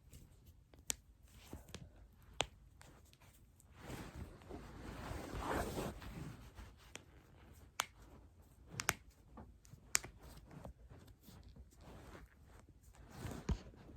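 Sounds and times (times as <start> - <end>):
clothing rustling: 1.2 - 13.9.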